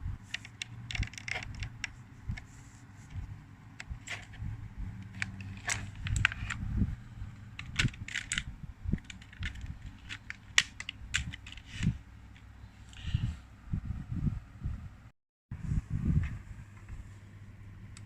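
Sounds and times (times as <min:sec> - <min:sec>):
keyboard and cable clicks and knocks: 0:00.3 - 0:02.5, 0:05.0 - 0:06.6, 0:07.5 - 0:12.5.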